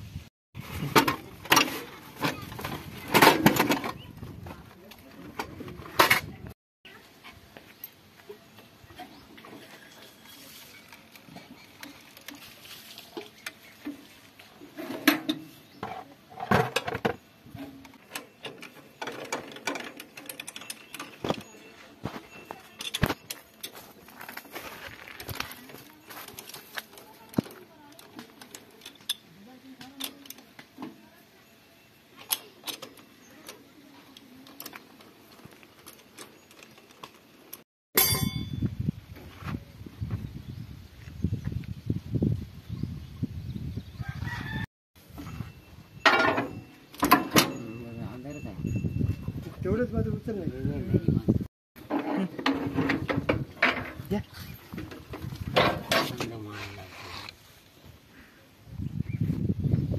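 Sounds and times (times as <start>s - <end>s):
metal tools clinking: 16.8s - 29.4s, 31.8s - 38.6s, 45.2s - 49.4s
metallic clicks and clinks: 17.8s - 24.1s
metal parts clattering: 18.1s - 24.4s.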